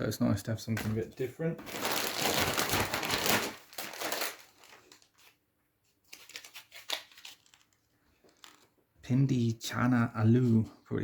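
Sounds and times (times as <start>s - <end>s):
plastic packets rustling: 1.6s - 8.8s.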